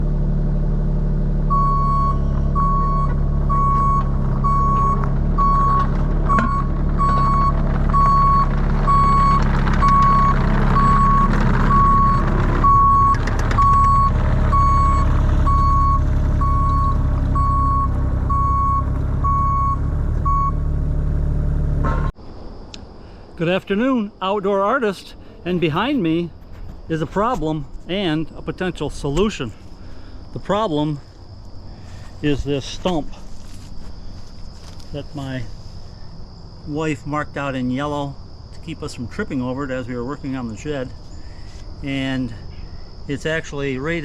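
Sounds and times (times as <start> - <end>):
diesel engine running: 0.0 - 22.2, 23.0 - 38.0
high beep alarm: 1.5 - 20.6.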